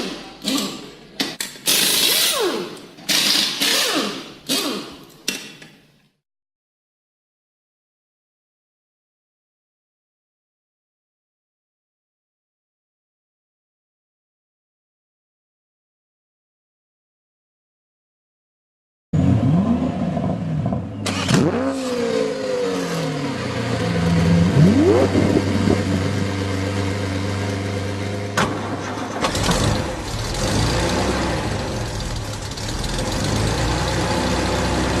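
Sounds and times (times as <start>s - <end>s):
car engine revving: 19.2s - 35.0s
deep rumble: 24.0s - 33.1s.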